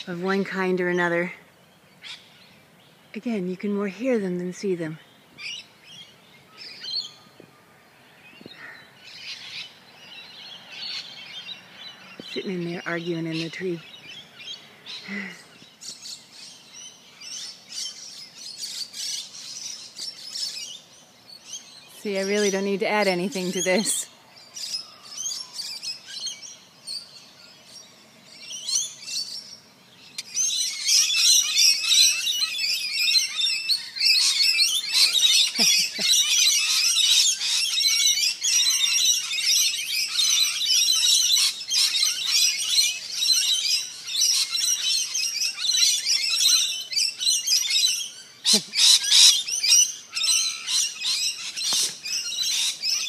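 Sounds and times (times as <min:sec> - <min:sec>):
parrots chattering and screeching: 0:30.1 - 0:53.0.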